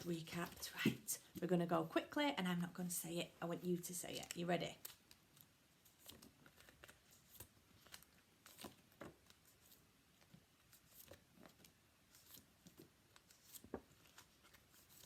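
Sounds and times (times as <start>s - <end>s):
paper flashcards rustling and flipping: 4.0s - 15.0s.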